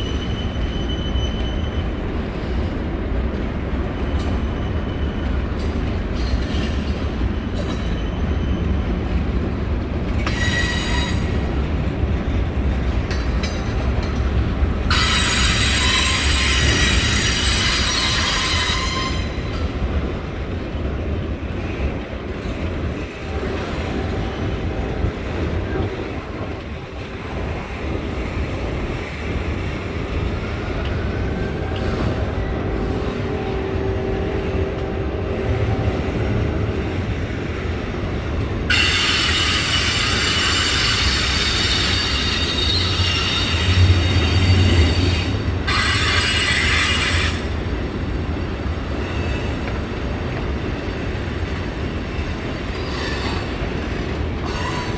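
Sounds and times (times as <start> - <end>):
high wheel squeal: 0.0 - 2.0, 14.9 - 19.5, 38.7 - 47.5
train wheels rumbling on rail: 0.0 - 54.9.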